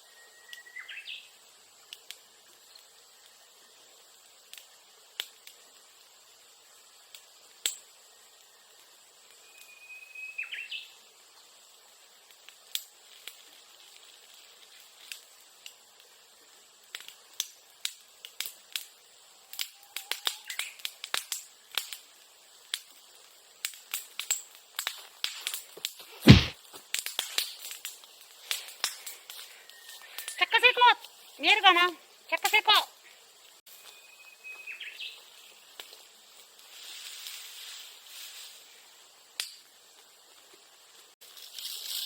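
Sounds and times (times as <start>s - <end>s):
bird whistled call: 0.0s - 1.3s, 9.4s - 10.9s, 33.8s - 35.2s
dry grass crackling in fire: 0.0s - 42.0s.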